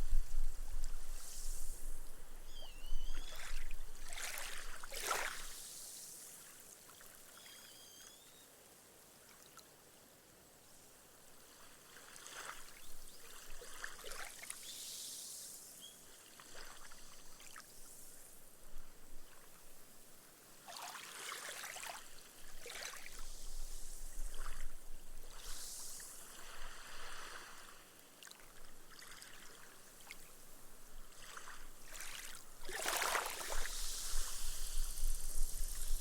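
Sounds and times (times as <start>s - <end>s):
gentle waves washing on sand: 3.4s - 6.8s, 20.6s - 30.4s, 31.0s - 36.0s.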